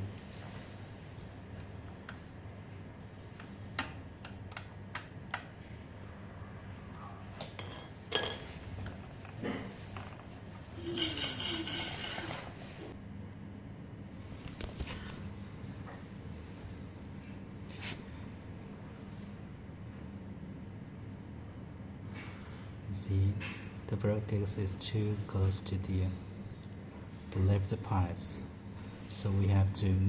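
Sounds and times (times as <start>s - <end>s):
steady low hum: 0.0s - 30.0s.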